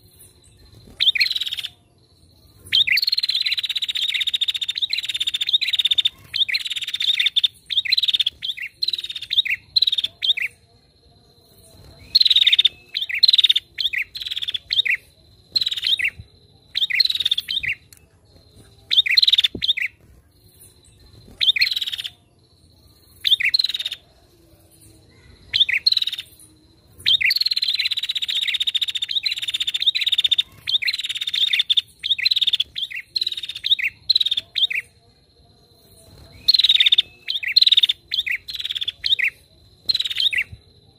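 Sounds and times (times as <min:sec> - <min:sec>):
bird chirping rapidly: 0:00.8 - 0:01.8, 0:02.7 - 0:10.6, 0:11.7 - 0:20.0, 0:20.7 - 0:22.2, 0:27.1 - 0:34.9, 0:36.3 - 0:40.5.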